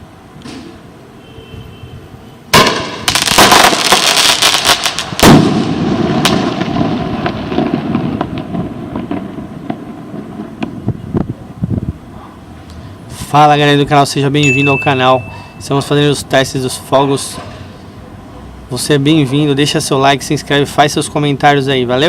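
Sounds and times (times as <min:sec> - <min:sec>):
firework loud bang: 0:02.5 - 0:11.0
glitter firework crackling: 0:02.5 - 0:11.5.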